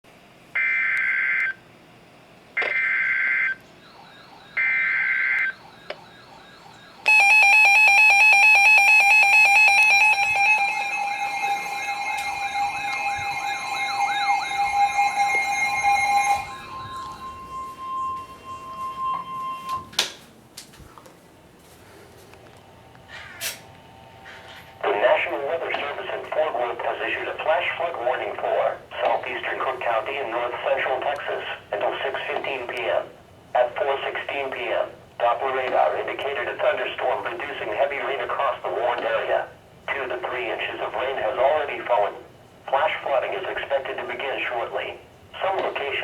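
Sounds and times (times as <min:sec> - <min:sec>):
weaker steady tone: 0:02.5 - 0:20.0
loud steady alert tone: 0:02.6 - 0:19.9
data tone bursts: 0:06.7 - 0:19.9
faint warbling tone: 0:09.0 - 0:19.8.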